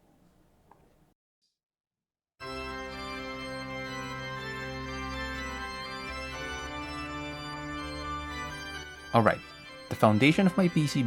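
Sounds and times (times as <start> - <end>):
organ-like keyboard chord: 2.4 - 11.0.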